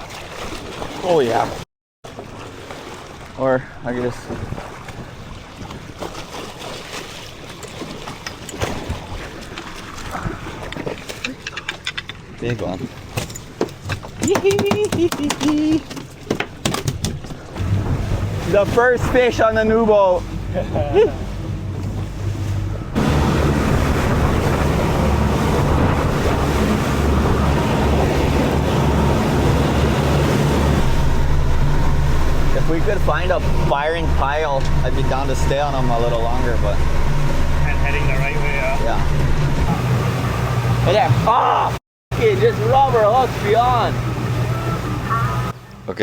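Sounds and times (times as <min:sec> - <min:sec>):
boat engine hum: 0:00.0 - 0:46.0
rushing water: 0:00.0 - 0:46.0
short knocks on boat: 0:12.5 - 0:19.4
wind noise on microphone: 0:21.5 - 0:31.0.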